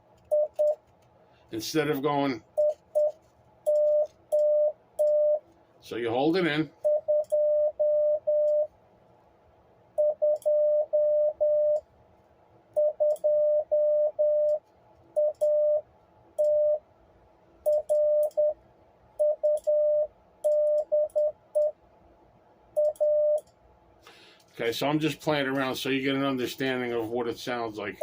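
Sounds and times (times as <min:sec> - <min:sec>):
morse code beeps: 0:00.3 - 0:00.8, 0:02.6 - 0:05.4, 0:06.8 - 0:08.7, 0:10.0 - 0:11.8, 0:12.8 - 0:14.6, 0:15.2 - 0:15.8, 0:16.4 - 0:16.8, 0:17.7 - 0:18.6, 0:19.2 - 0:21.8, 0:22.8 - 0:23.4.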